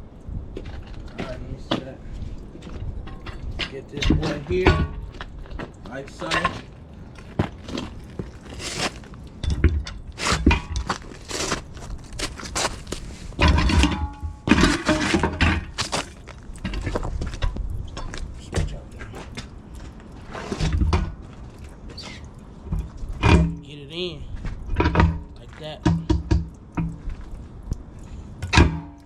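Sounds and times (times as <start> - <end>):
steel tools clanking on rim: 6.1 - 6.7, 13.3 - 19.2.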